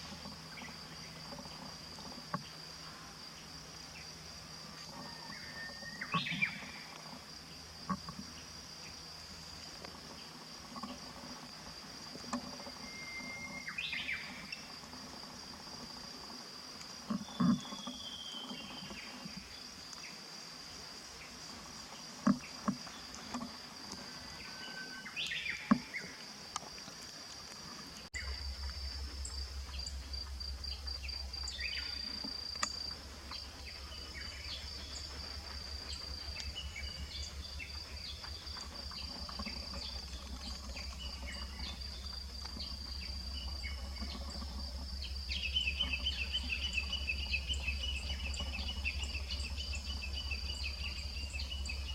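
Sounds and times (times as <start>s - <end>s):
insects trilling: 0.0s - 51.9s
low hum: 28.1s - 51.9s.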